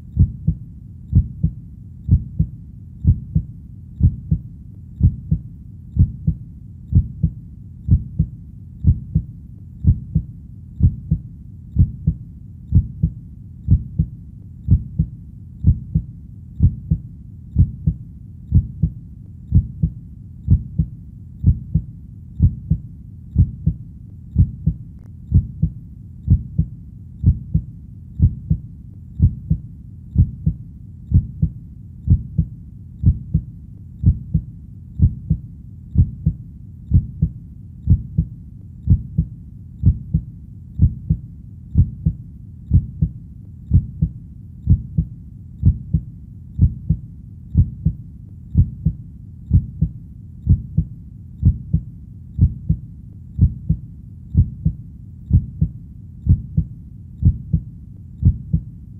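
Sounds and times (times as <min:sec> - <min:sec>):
heartbeat thumps: 0:00.0 - 0:58.7.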